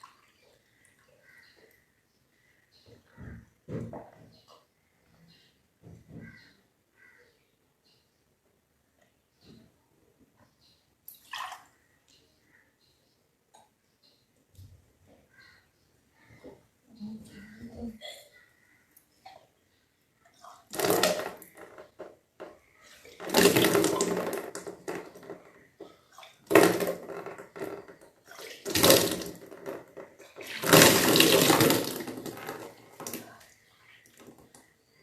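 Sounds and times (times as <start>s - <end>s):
water splashing and pouring: 20.4s - 21.7s, 22.8s - 34.3s.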